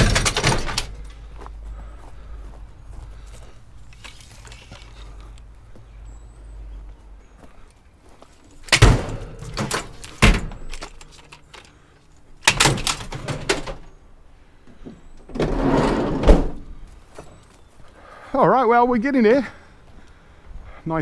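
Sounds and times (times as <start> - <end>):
scrap metal clanking: 0.0 - 5.8, 8.4 - 11.8.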